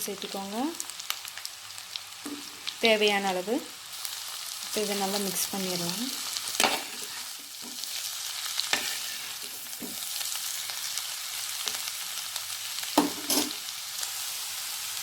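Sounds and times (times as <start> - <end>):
food sizzling in a pan: 0.0 - 15.0
spoon scraping and knocking pan: 2.2 - 2.5, 6.6 - 7.9, 8.7 - 10.1, 13.0 - 13.6.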